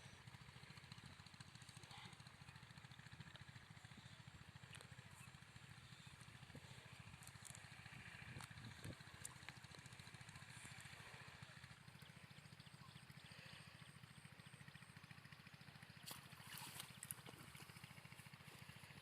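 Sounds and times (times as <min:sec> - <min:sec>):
faint low hum: 0:03.9 - 0:19.0.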